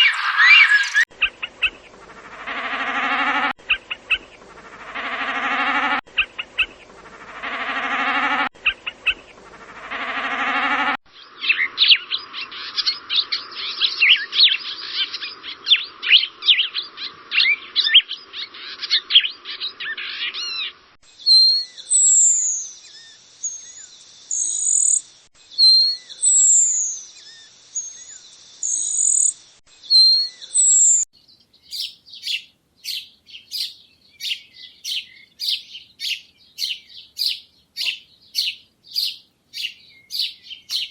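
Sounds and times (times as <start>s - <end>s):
high falling bird whistles: 0.0s - 1.1s, 25.6s - 31.0s, 33.6s - 40.9s
sharp bird chirps: 0.0s - 1.8s, 17.4s - 40.9s
low buzzy bird call: 25.6s - 40.9s
chatter of bird chirps: 31.7s - 40.9s.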